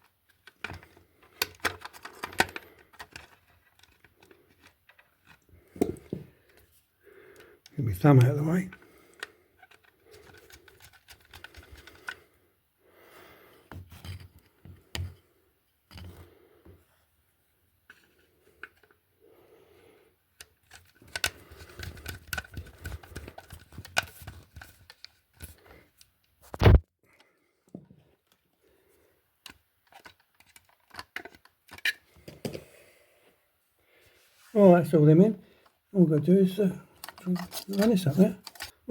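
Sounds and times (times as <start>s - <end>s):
clicks and scrapes of wiring: 0.0s - 5.9s, 7.6s - 12.2s, 20.4s - 26.8s, 29.4s - 32.4s, 36.2s - 38.9s.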